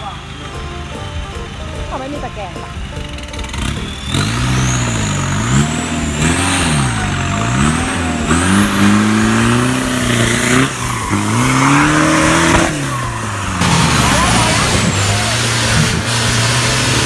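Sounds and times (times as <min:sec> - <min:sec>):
engine revving: 0:00.0 - 0:17.0.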